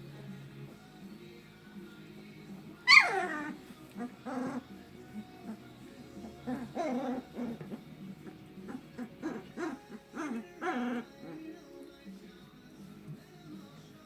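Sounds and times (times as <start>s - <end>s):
puppies whining and squeaking: 2.8s - 11.8s.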